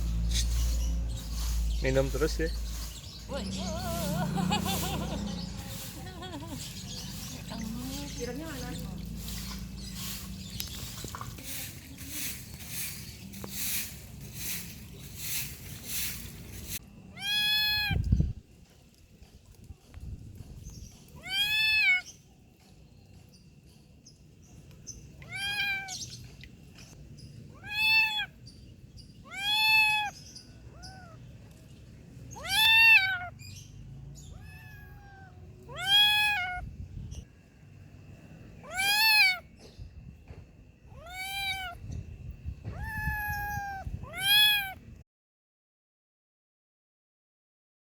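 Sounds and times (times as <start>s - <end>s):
kitten meowing: 17.1s - 18.1s, 21.2s - 22.1s, 25.2s - 26.0s, 27.5s - 28.4s, 29.2s - 31.2s, 32.3s - 33.3s, 34.3s - 36.7s, 38.6s - 39.4s, 40.9s - 41.9s, 42.7s - 44.8s.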